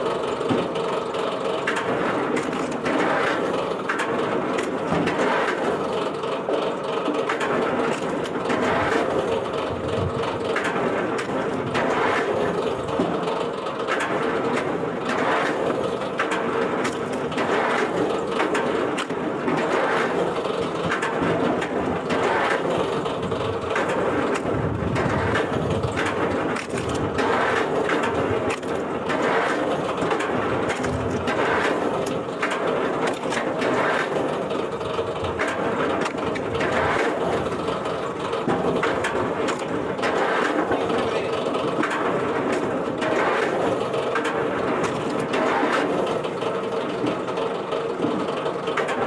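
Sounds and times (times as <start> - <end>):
wood crunching through machine: 0.0 - 49.0
wood-processing machinery humming: 0.0 - 49.0.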